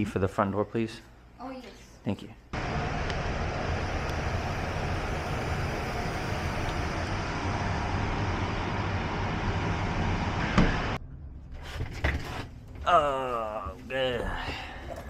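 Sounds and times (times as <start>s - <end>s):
outdoor traffic noise: 2.6s - 12.8s.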